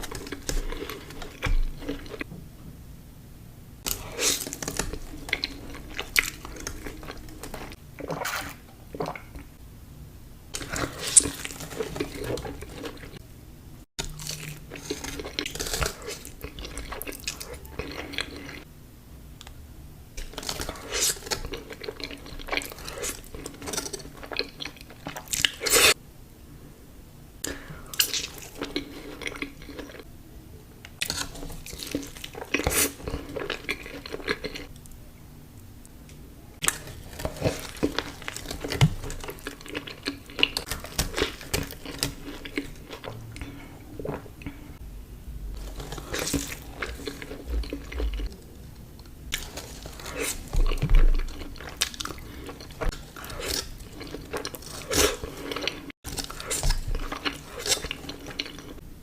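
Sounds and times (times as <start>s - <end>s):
crispy chicken crunching: 0.0s - 2.3s, 3.8s - 9.4s, 10.6s - 13.2s, 14.0s - 18.7s, 20.2s - 26.0s, 27.5s - 30.0s, 31.0s - 34.9s, 36.6s - 44.7s, 45.6s - 58.8s.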